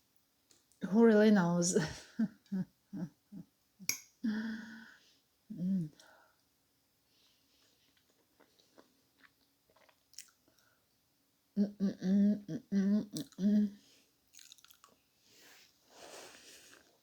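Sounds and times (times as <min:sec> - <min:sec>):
woman humming mmm: 0:05.5 - 0:06.0, 0:11.6 - 0:13.8
woman chewing: 0:07.6 - 0:10.7, 0:14.3 - 0:15.0.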